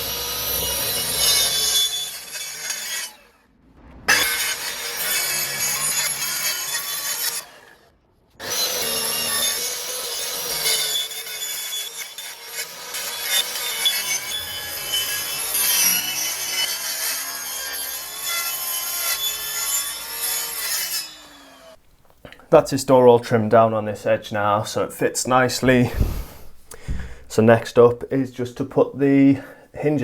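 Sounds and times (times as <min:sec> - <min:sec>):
track saw cutting wood: 0:00.0 - 0:03.4, 0:04.1 - 0:21.8.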